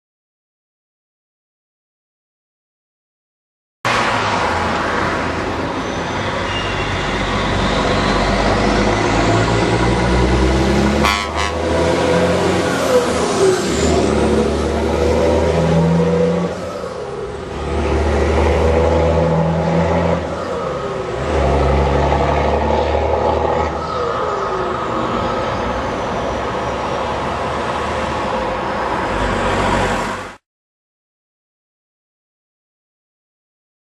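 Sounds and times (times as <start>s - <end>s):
truck diesel engine driving by: 3.9s - 30.4s.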